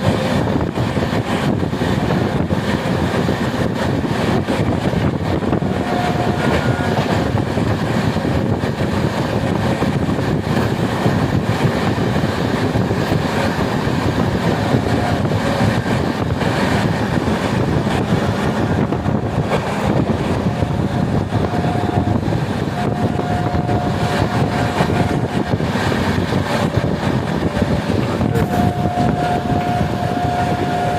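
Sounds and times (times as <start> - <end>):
rushing air: 0.0 - 30.9
train wheels rumbling on rail: 0.0 - 30.9
train horn: 4.4 - 7.6, 11.7 - 30.9.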